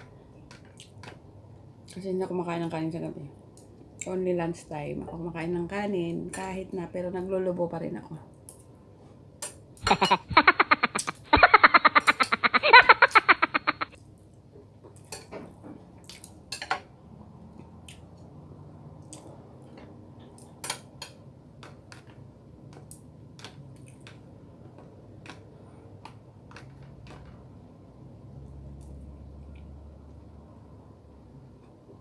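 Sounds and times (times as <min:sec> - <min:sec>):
cutlery clinking on a plate: 0:16.5 - 0:16.9.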